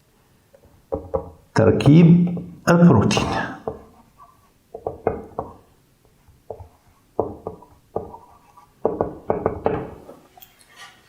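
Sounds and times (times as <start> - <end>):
sharp knocks and taps: 0.6 - 2.6, 3.6 - 4.0, 4.7 - 10.2.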